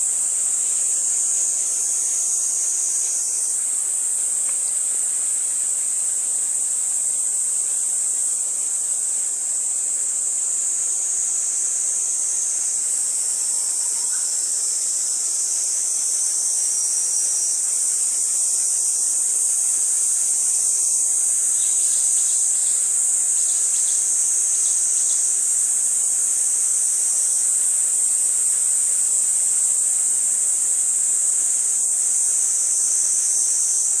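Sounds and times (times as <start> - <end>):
high-pitched insect chorus: 0.0 - 34.0
faint ticks: 3.0 - 5.8.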